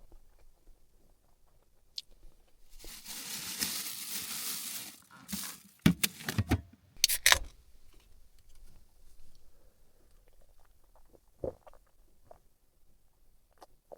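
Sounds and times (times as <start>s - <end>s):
rustling: 2.6s - 9.2s
objects clicking and knocking: 4.8s - 7.5s.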